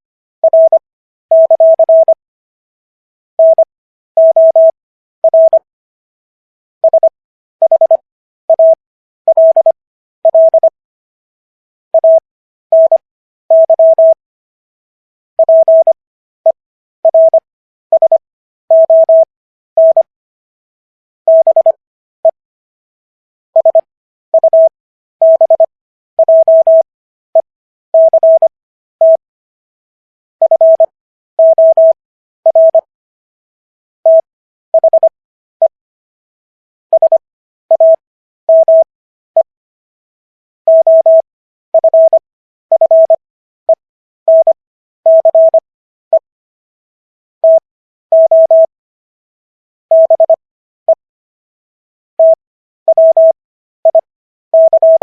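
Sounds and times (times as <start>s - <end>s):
morse code beeps: 0.4s - 2.2s, 3.4s - 5.7s, 6.8s - 10.8s, 12.0s - 14.2s, 15.4s - 20.1s, 21.3s - 22.4s, 23.6s - 29.2s, 30.4s - 32.9s, 34.0s - 35.8s, 36.9s - 39.5s, 40.7s - 46.3s, 47.4s - 48.7s, 49.9s - 51.0s, 52.2s - 55.0s.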